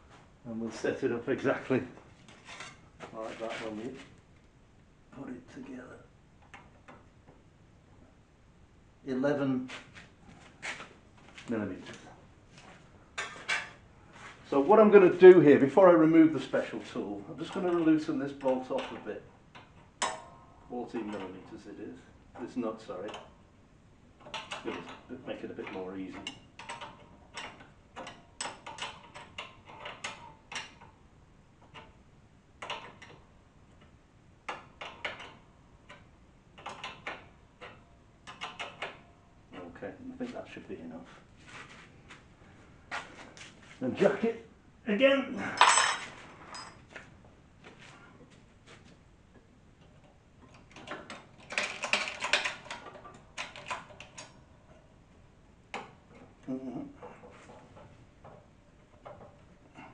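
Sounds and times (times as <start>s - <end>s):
spanner clicking on a nut: 25.6s - 30.9s, 34.5s - 39.0s
metal tools clicking and clinking: 45.6s - 46.8s.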